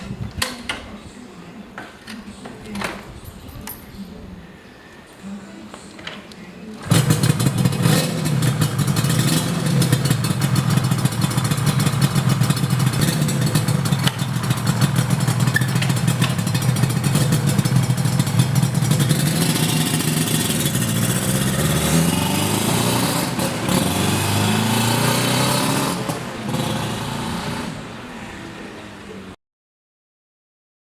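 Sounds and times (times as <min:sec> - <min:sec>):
motorcycle engine revving: 0:06.8 - 0:28.0.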